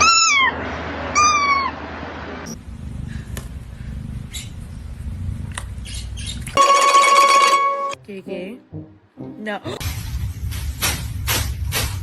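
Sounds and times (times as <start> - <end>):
cat meowing: 0.0 - 0.6.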